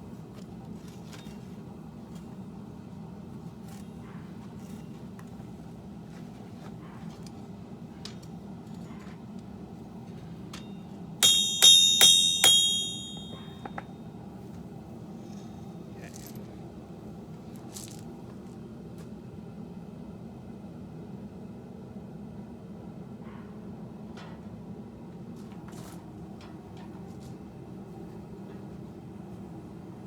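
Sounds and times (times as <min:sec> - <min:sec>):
hammer blows on steel anvil: 0:11.2 - 0:13.8.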